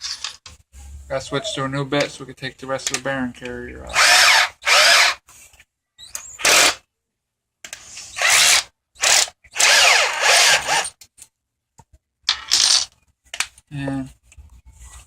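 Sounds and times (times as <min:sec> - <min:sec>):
small power drill running: 0:03.9 - 0:05.2, 0:06.4 - 0:06.8, 0:08.2 - 0:10.9.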